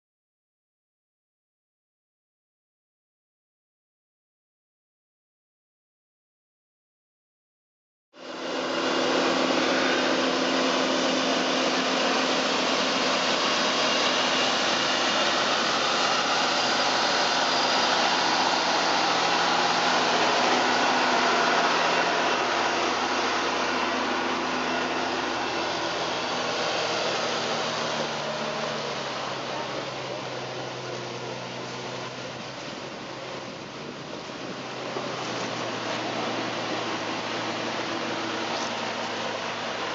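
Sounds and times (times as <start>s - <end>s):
backhoe engine running: 8.2s - 39.9s.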